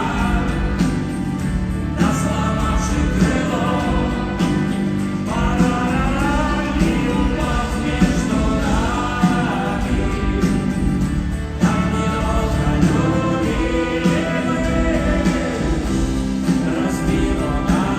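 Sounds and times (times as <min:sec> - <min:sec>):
drum hits: 0:00.0 - 0:17.9
rock band playing live: 0:00.0 - 0:17.9.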